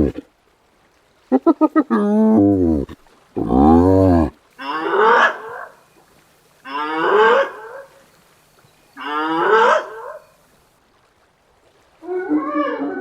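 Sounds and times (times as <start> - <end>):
hyena calling: 1.3 - 5.9, 6.6 - 8.1, 9.0 - 10.4.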